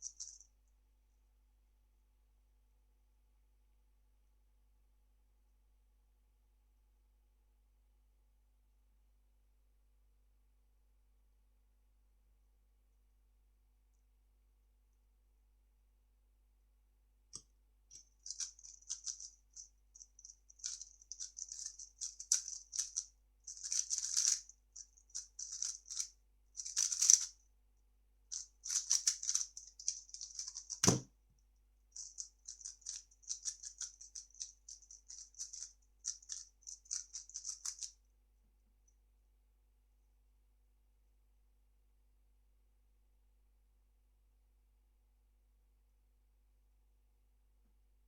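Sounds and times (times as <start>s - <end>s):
plastic puzzle cube clicking: 20.6s - 24.4s, 25.4s - 27.3s, 28.7s - 31.0s, 35.1s - 37.9s.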